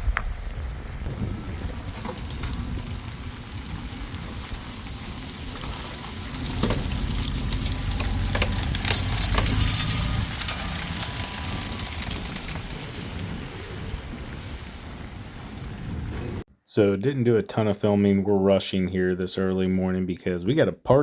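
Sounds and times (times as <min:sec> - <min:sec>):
vehicle engine rumbling: 0:00.0 - 0:16.5.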